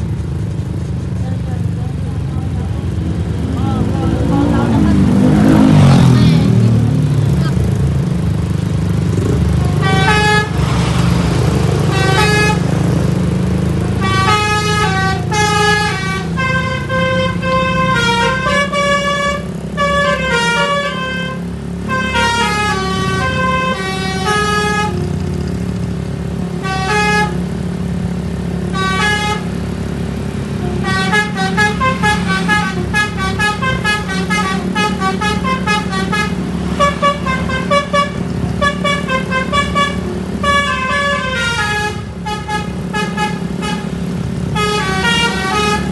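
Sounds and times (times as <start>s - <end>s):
bus engine running: 0.0s - 45.9s
bus horn playing tunes: 9.7s - 10.8s, 11.8s - 12.7s, 14.0s - 25.2s, 26.6s - 27.4s, 28.7s - 29.6s, 30.6s - 45.9s.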